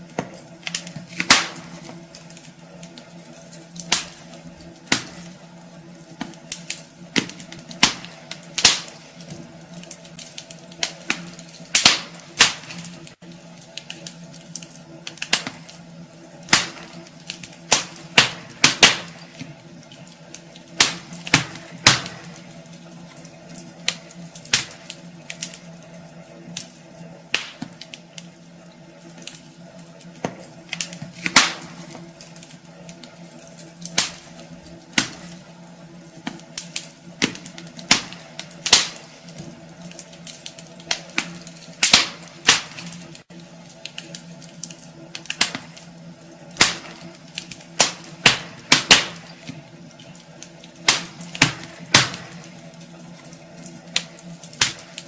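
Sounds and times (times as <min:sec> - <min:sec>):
steady low hum: 0:00.0 - 0:55.0
wood fire crackling and popping: 0:00.0 - 0:55.0.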